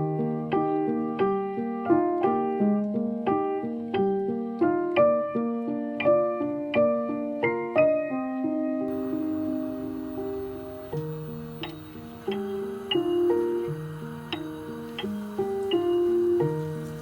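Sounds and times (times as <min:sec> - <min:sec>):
soft piano music: 0:00.0 - 0:17.0.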